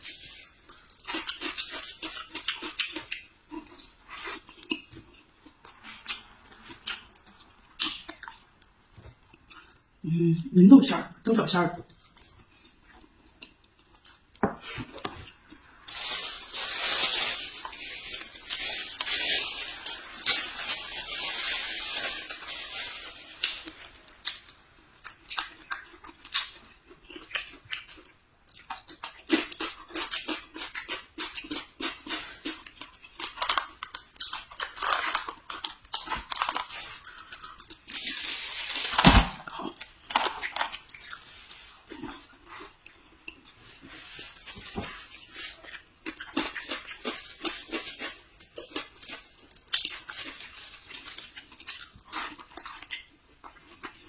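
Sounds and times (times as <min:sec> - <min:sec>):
person biting and chewing food: 0:00.4 - 0:09.8, 0:22.2 - 0:54.0
rustling noise: 0:15.8 - 0:24.6, 0:37.9 - 0:39.5, 0:40.6 - 0:42.7, 0:43.5 - 0:45.8.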